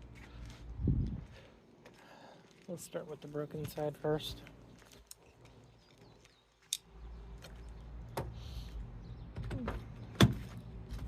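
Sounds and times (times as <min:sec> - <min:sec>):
steady low hum: 0:00.0 - 0:05.9.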